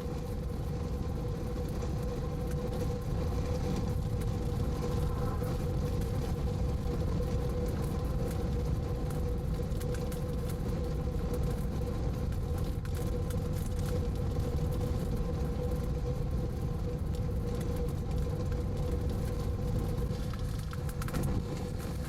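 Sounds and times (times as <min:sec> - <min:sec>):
mid-pitched hum: 0:00.0 - 0:09.5
vehicle noise: 0:00.0 - 0:22.0
wind rumble: 0:00.0 - 0:22.0.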